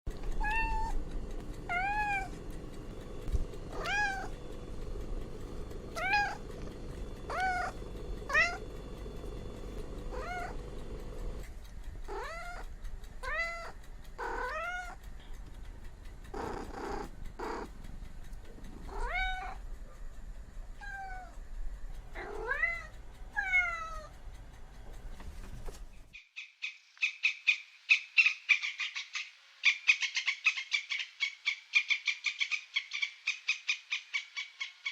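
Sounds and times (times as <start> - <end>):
cat meowing: 0.4 - 1.0, 1.7 - 2.3, 3.7 - 4.4, 5.9 - 6.5, 7.3 - 8.6, 10.1 - 10.6, 12.1 - 15.0, 18.9 - 19.6
cat trilling: 0.4 - 1.0, 3.7 - 4.4, 5.9 - 6.6, 7.3 - 8.7, 10.1 - 10.6, 12.1 - 15.0, 18.9 - 19.6.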